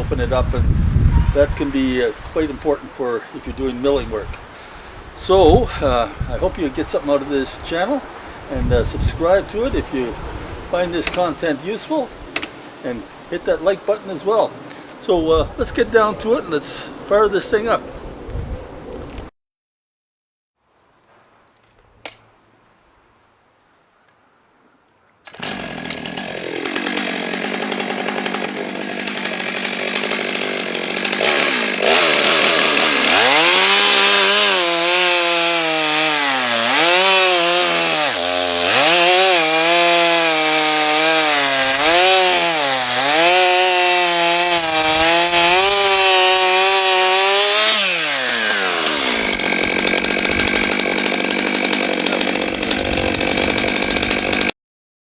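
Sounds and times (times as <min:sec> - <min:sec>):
chainsaw cutting wood: 0:25.2 - 0:54.6.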